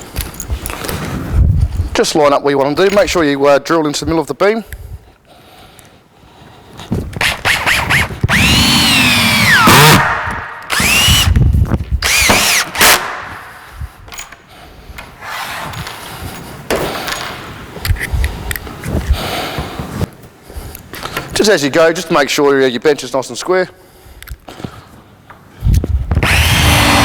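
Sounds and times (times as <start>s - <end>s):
power drill driving screws: 7.2s - 11.4s, 12.0s - 13.5s, 26.2s - 27.0s.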